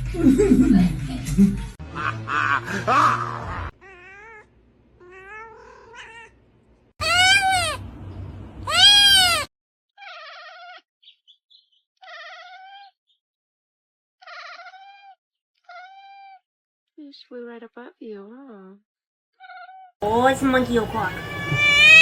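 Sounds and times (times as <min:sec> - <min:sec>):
cats meowing: 0:03.7 - 0:06.4, 0:07.0 - 0:07.8, 0:08.7 - 0:10.8, 0:12.0 - 0:12.9, 0:14.2 - 0:16.4, 0:21.0 - 0:22.0.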